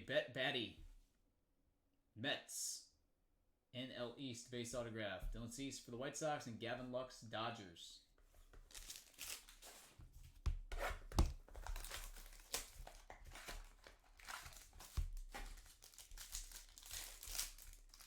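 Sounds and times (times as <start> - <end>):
plastic packaging crinkling and tearing: 8.6 - 10.0, 11.4 - 18.0.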